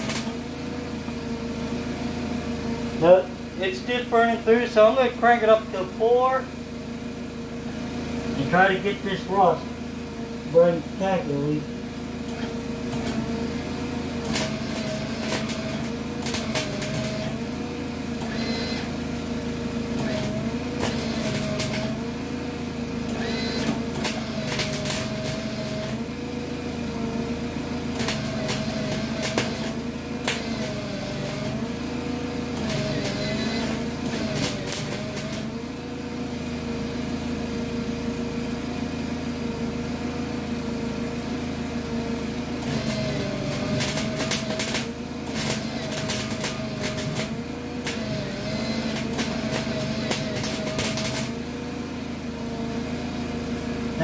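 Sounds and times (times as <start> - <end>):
welder arc crackling: 0.0 - 0.4, 3.1 - 6.4, 12.3 - 19.0, 19.9 - 22.1, 23.0 - 26.2, 27.8 - 31.7, 32.4 - 35.6, 42.6 - 51.4
welder hum: 0.0 - 54.0.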